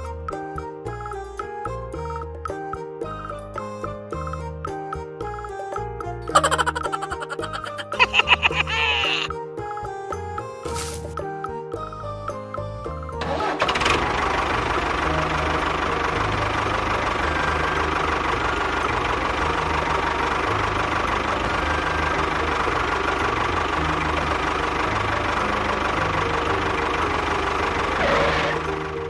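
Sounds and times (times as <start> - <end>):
engine knocking rumble: 13.2 - 29.0.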